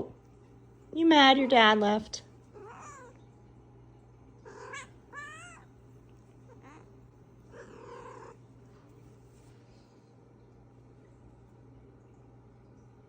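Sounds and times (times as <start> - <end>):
cat meowing: 2.6 - 3.2, 4.5 - 5.7, 6.5 - 6.9, 7.5 - 8.4.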